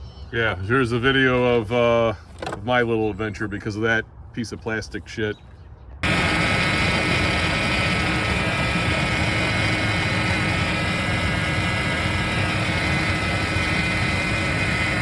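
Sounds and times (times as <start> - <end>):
car engine running: 6.0 - 15.0.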